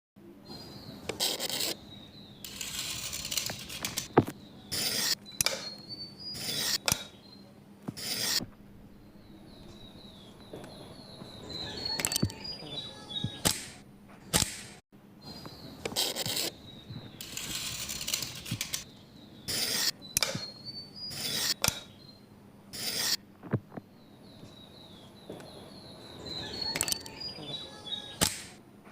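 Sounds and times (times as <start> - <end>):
small birds chirping: 0.2 - 28.9
hand tool scraping bamboo: 1.1 - 1.8, 2.5 - 7.1, 7.9 - 8.5, 15.8 - 16.6, 19.5 - 20.0, 21.1 - 21.8, 22.8 - 23.2.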